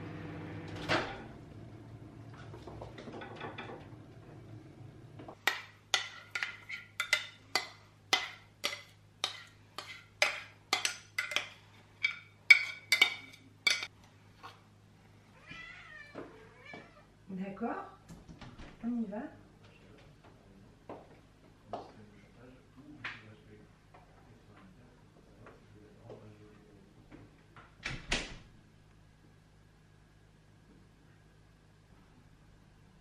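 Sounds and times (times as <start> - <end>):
dishes clinking: 5.3 - 13.9.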